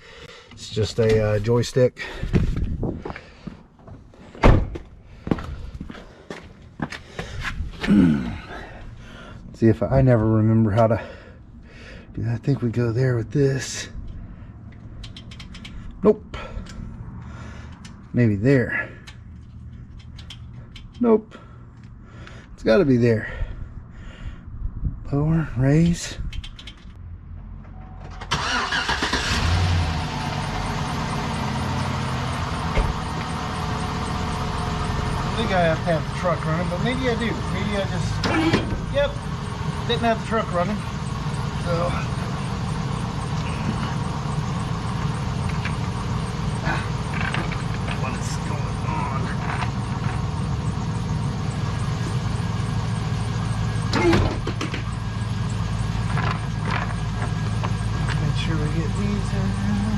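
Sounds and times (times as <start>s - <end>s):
pickup engine cranking and idling: 0.3s - 23.2s, 25.7s - 59.9s
short engine knocks: 53.8s - 55.0s.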